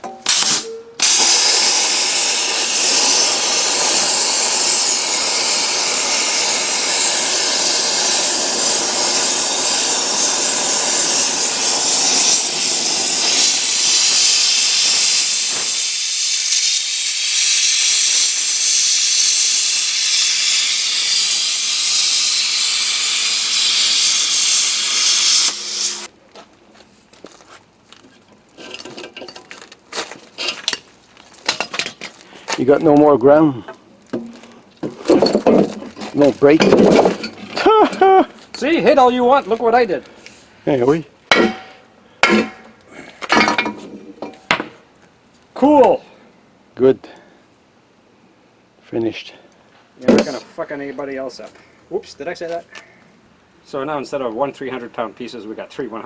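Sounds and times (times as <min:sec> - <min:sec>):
plasma cutter hissing: 0:00.3 - 0:26.1.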